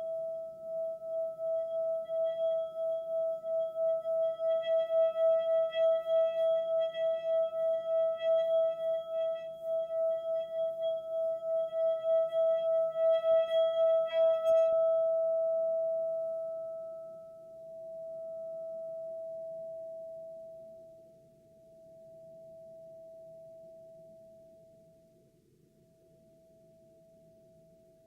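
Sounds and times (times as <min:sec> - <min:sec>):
pulsing ringing tone: 0:00.0 - 0:20.8.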